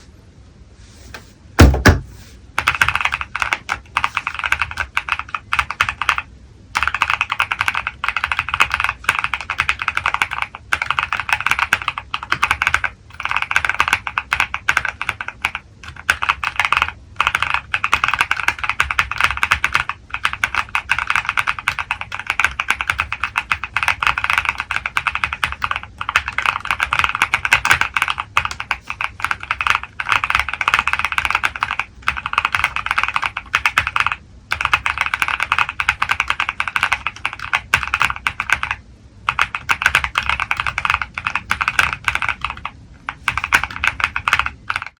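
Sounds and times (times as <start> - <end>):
loud low thump: 1.6 - 2.2
mechanical keyboard typing: 2.6 - 44.9.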